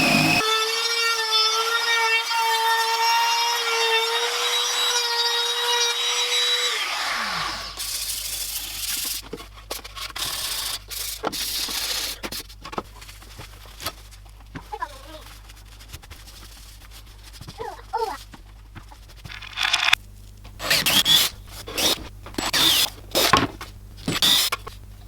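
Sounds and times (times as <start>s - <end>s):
power tool sanding: 0.0s - 7.8s, 20.6s - 23.4s, 24.0s - 24.6s.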